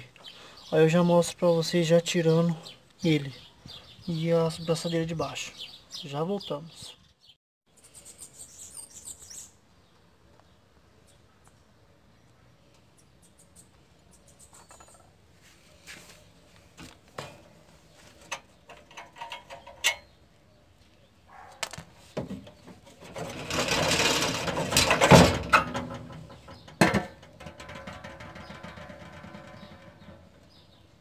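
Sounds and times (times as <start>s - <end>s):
rattling metal scrape: 18.3s - 20.2s, 22.5s - 30.8s.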